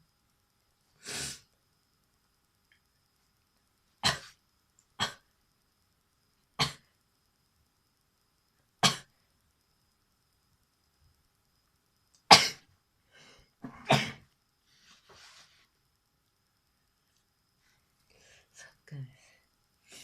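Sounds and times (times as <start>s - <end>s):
sneeze-like bursts of breath: 1.0s - 1.5s, 4.0s - 4.4s, 12.3s - 12.6s.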